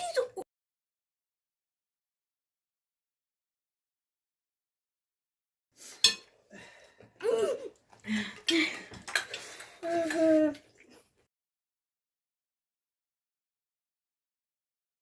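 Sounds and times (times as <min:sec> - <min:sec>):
cutlery and bowls clinking: 0:06.0 - 0:06.3, 0:08.4 - 0:10.4.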